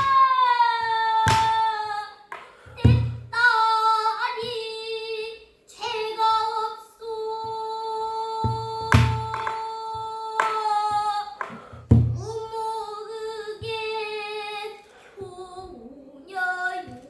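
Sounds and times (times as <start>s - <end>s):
child singing: 0.0s - 17.0s
barrel drum strokes: 2.3s - 3.4s, 11.4s - 12.4s.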